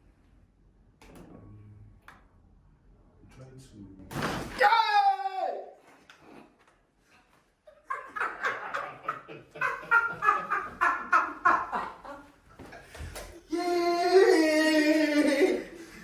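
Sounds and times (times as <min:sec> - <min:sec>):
thump: 0:04.1 - 0:04.6
long loud cry: 0:04.6 - 0:05.8, 0:13.5 - 0:15.9
person laughing: 0:07.9 - 0:12.3.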